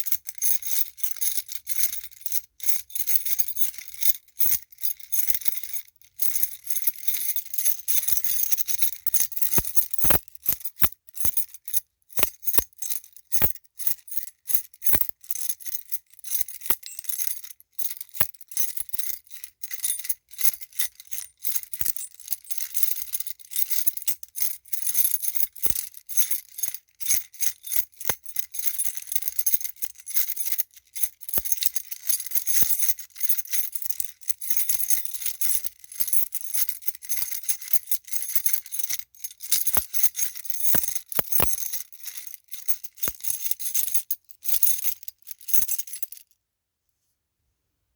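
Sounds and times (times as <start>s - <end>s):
metal keys jangling: 3.1s - 11.6s, 12.2s - 13.6s, 14.6s - 15.3s, 16.4s - 17.5s, 33.5s - 44.8s.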